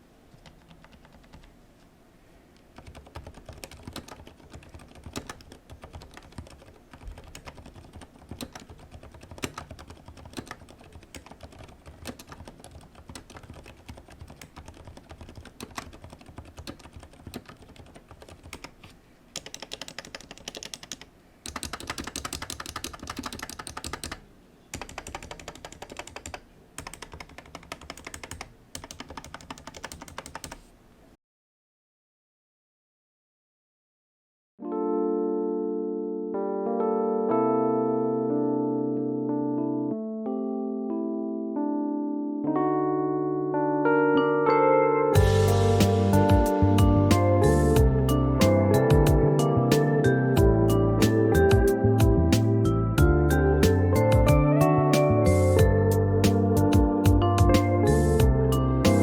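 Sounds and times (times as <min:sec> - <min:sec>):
mechanical keyboard typing: 0:00.3 - 0:01.5, 0:02.8 - 0:30.7.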